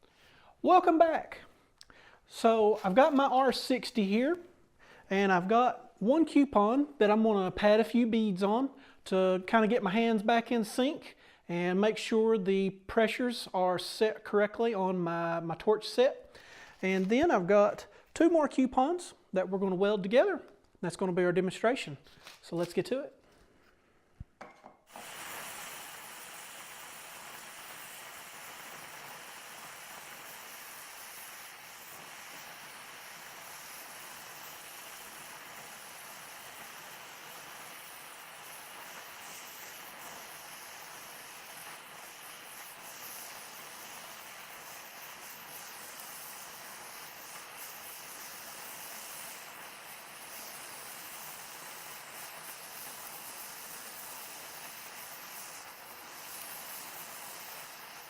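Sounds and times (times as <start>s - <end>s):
welding torch flame hissing: 0.0s - 6.1s, 24.0s - 58.0s.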